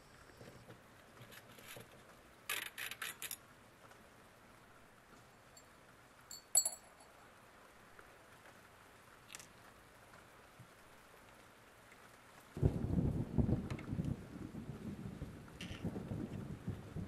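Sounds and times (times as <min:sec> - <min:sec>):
metal parts clinking: 0:06.3 - 0:07.0.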